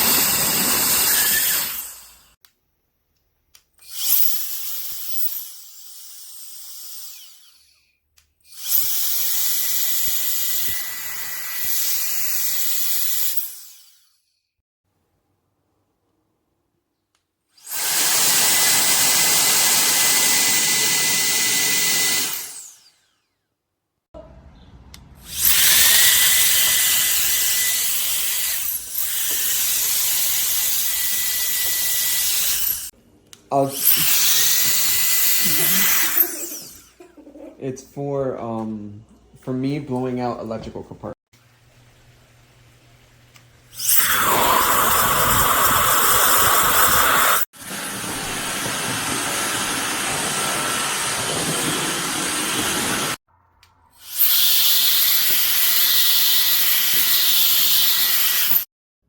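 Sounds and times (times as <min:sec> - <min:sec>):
electric air duster fan: 0:00.0 - 0:02.1, 0:43.8 - 0:53.2
electric air duster whining: 0:00.0 - 0:02.4, 0:17.6 - 0:23.1, 0:25.2 - 0:32.9, 0:33.6 - 0:37.1, 0:43.8 - 0:53.2.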